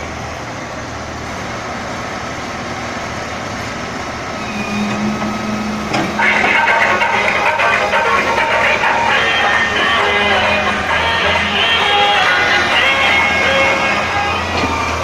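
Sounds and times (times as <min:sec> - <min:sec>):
diesel engine running: 0:00.0 - 0:15.0
music: 0:06.2 - 0:15.0.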